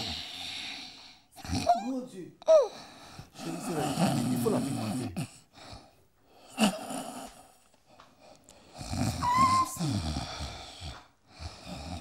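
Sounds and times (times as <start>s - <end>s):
woman snoring with whistle: 8.8s - 10.6s.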